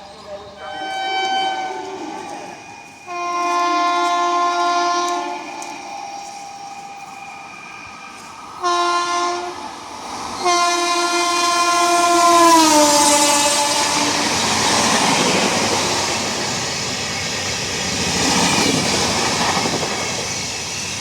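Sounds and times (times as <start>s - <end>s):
train running noise: 0.0s - 21.0s
locomotive horn blasts: 0.6s - 6.4s, 8.6s - 9.6s, 10.4s - 14.4s.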